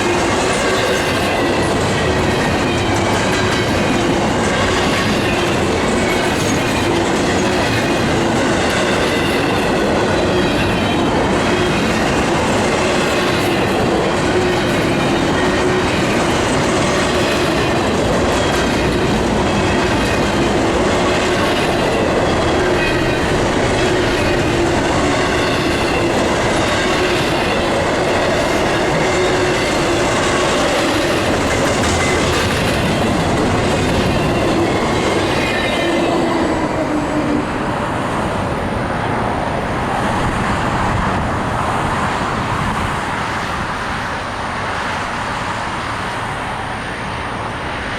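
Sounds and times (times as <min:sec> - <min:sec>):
train wheels rumbling on rail: 0:00.0 - 0:47.9.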